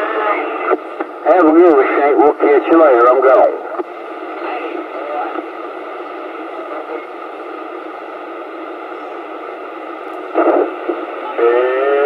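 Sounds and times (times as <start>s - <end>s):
radio crackle: 0.0s - 8.4s, 9.0s - 12.0s
radio static hiss: 0.0s - 12.0s.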